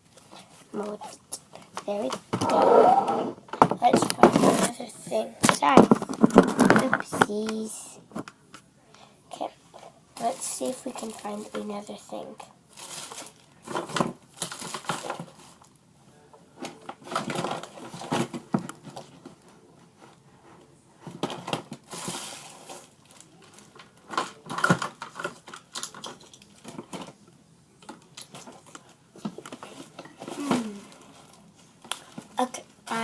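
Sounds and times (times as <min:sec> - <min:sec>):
household objects clicking and knocking: 0:05.4 - 0:08.4.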